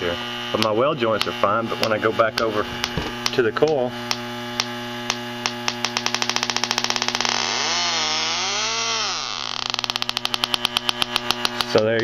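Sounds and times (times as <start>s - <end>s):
steady hum: 0.0s - 12.0s
leak detector clicking: 0.6s - 11.9s
wavering alarm tone: 2.4s - 11.6s.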